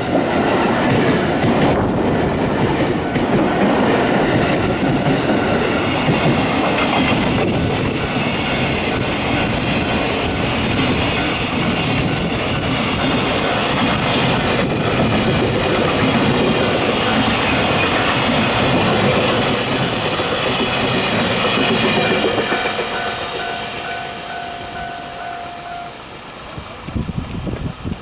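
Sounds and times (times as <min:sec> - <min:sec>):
train wheels clattering over rails: 0:00.0 - 0:25.8
steady tone: 0:19.3 - 0:26.4.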